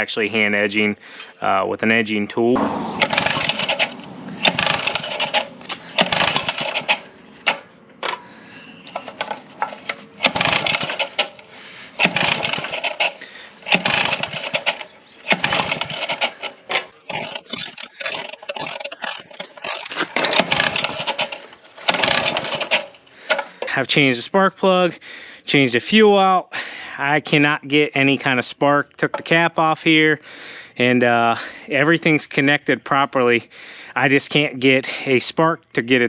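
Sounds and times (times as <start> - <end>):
recoil starter rope whirring: 2.7 - 23.8.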